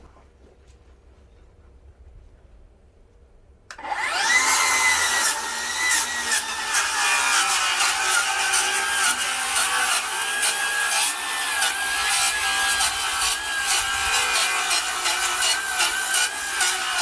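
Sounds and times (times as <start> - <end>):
circular saw whining and cutting: 3.7 - 17.0.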